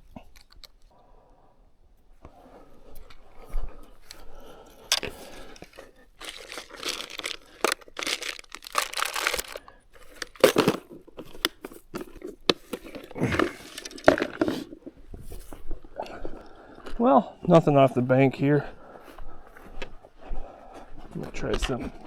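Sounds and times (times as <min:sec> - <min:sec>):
rustling and crinkling: 0:00.0 - 0:01.0, 0:01.9 - 0:16.9.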